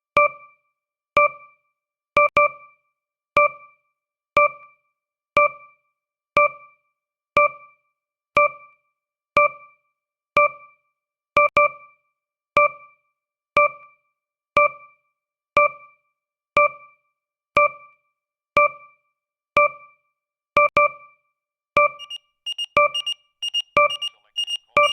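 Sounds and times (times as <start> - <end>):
electronic timer tick notes: 0.2 - 0.6, 1.2 - 1.6, 2.2 - 2.6, 3.4 - 3.7, 4.4 - 4.7, 5.4 - 5.7, 6.4 - 6.8, 7.4 - 7.8, 8.4 - 8.8, 9.4 - 9.7, 10.4 - 10.8, 11.4 - 11.8, 12.6 - 13.0, 13.6 - 14.0, 14.6 - 14.9, 15.6 - 16.0, 16.6 - 17.0, 17.6 - 17.9, 18.6 - 18.9, 19.6 - 19.9, 20.6 - 21.0, 21.8 - 24.9
high-pitched alarm beeps: 21.8 - 24.9.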